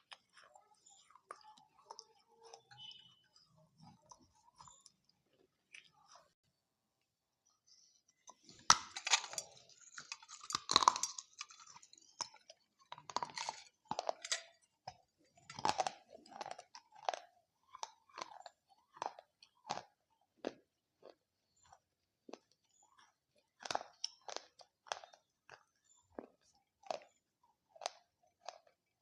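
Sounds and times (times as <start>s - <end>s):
crunchy chewing: 0.0s - 6.4s, 7.8s - 29.0s
crunchy food bites: 8.3s - 28.8s.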